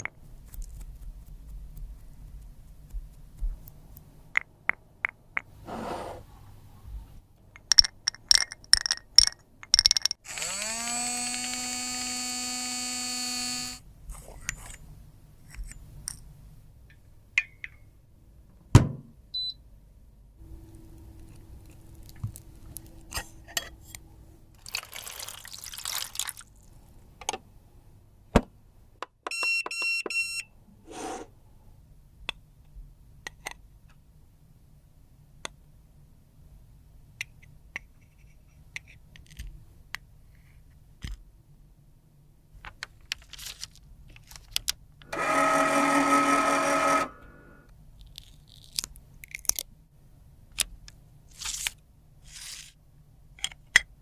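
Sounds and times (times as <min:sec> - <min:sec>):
motorised buzz: 0:10.3 - 0:13.8.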